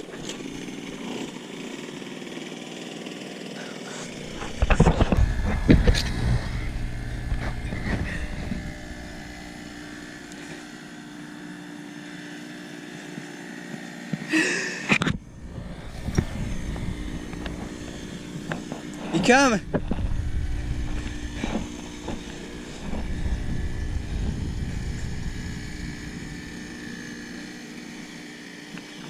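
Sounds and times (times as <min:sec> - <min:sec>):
boat motor whining: 0:00.0 - 0:02.2, 0:03.5 - 0:29.0
loud low rumbling: 0:04.2 - 0:10.3, 0:15.2 - 0:27.3.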